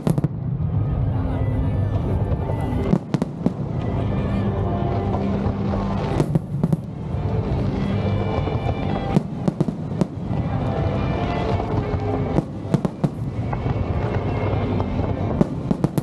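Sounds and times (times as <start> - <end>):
fireworks bursting: 0.0 - 0.9, 1.9 - 16.0
music playing: 0.0 - 16.0.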